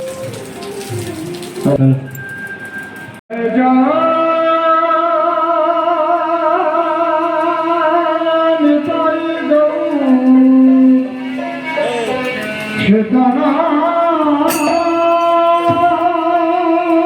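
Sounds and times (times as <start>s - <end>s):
song through speaker: 3.3s - 17.0s
voice holding long notes: 3.4s - 17.0s.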